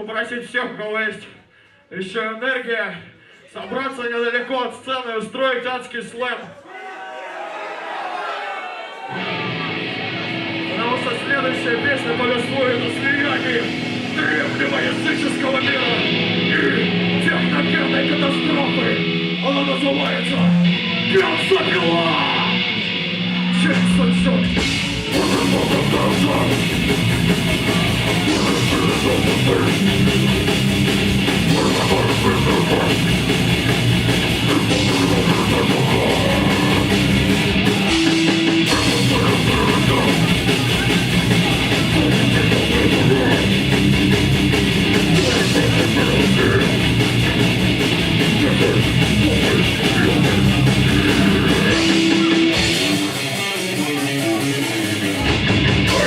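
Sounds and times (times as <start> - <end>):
grindcore band playing: 9.1 - 56.0.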